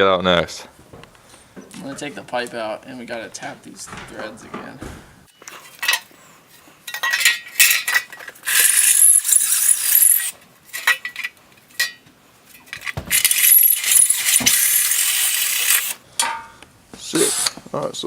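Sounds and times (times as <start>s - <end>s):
metal clicks and clinks: 6.9s - 14.7s
power drill drilling metal: 8.4s - 10.4s, 13.1s - 16.0s.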